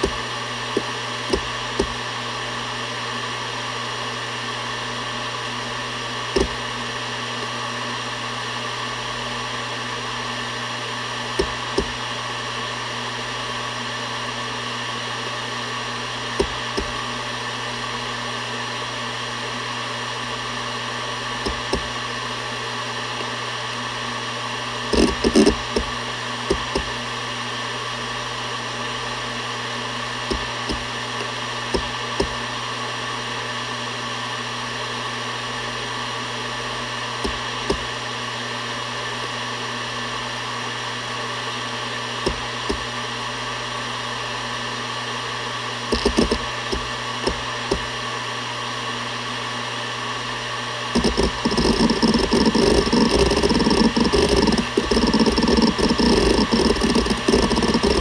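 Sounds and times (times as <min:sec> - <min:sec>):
hard drive seek clicks: 0:00.0 - 0:02.5, 0:05.8 - 0:07.6, 0:11.1 - 0:12.6, 0:16.1 - 0:17.6, 0:20.5 - 0:22.6, 0:24.7 - 0:27.2, 0:28.9 - 0:32.7, 0:36.6 - 0:38.1, 0:42.1 - 0:43.2, 0:45.8 - 0:48.1, 0:51.0 - 0:58.0
hard drive humming and whining: 0:00.0 - 0:58.0.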